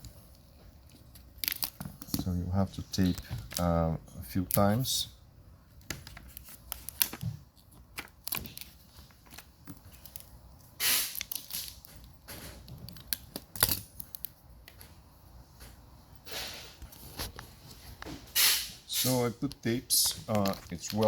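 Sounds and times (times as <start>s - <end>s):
tape crinkling and clicking: 0.0s - 5.0s, 5.7s - 15.0s, 18.9s - 21.0s
tape unrolling rasp: 10.0s - 12.0s, 18.3s - 19.4s.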